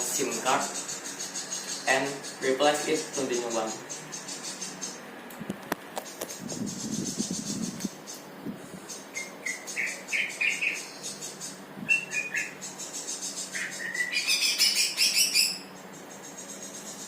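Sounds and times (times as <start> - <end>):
bird chirping: 0.1 - 5.0, 8.9 - 17.0.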